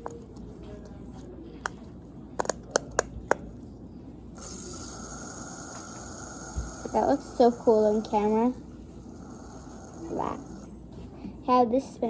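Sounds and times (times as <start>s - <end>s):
spinner whirring: 4.4s - 10.8s.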